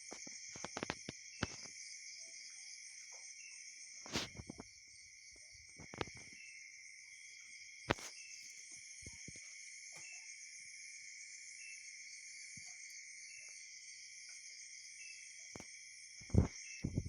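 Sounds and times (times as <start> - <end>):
insects chirping: 0.0 - 17.0.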